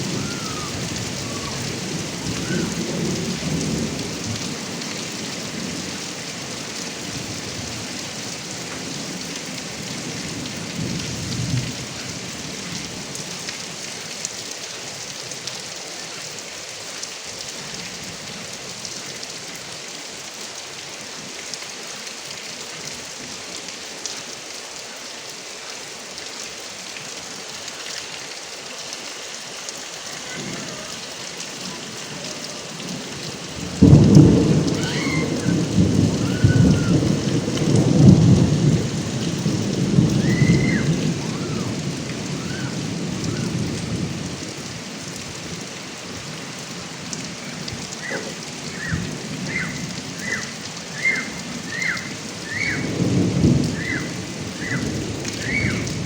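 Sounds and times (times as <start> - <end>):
thunder rumble: 0.0 - 4.8, 30.2 - 44.5, 47.7 - 56.0
water splashing from gutter spout: 0.0 - 15.6, 29.4 - 56.0
heavy rain pouring: 0.0 - 56.0.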